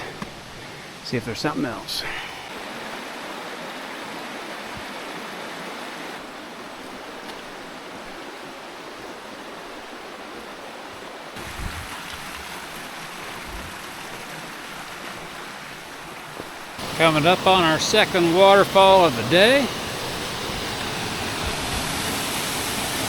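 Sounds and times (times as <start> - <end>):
creek splashing over cascades: 0.0 - 23.0.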